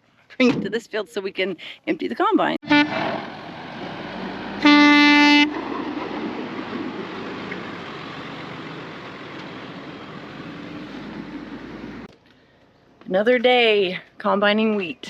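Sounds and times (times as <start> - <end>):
vehicle horn honk: 2.6 - 3.0, 4.6 - 5.6
vehicle driving: 2.6 - 12.1.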